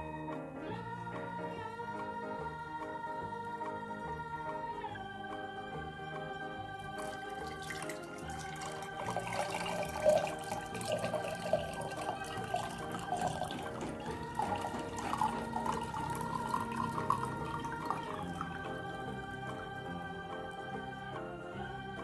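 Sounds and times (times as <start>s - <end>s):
electronic organ music: 0.0s - 22.0s
liquid pouring through a strainer: 7.0s - 18.9s.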